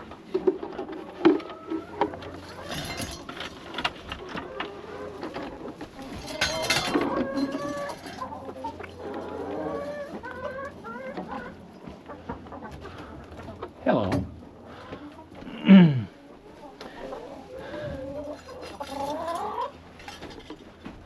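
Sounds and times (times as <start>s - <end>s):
hens clucking: 0.0s - 21.0s.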